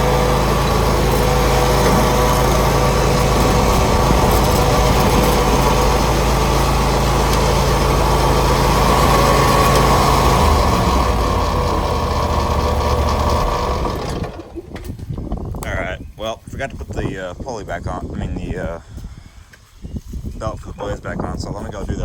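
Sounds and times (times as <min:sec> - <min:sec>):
lawn mower engine running: 0:00.0 - 0:14.9.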